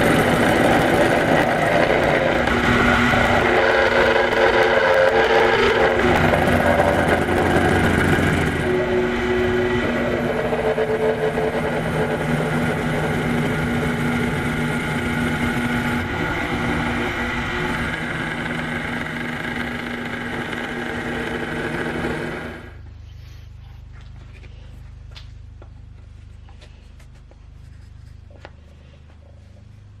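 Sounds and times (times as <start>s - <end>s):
workshop machine motor running: 0.0s - 30.0s.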